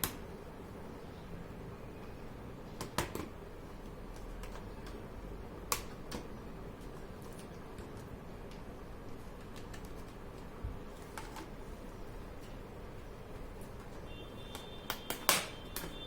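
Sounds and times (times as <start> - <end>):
plastic clips snapping loose: 5.7 - 6.3, 14.5 - 16.0.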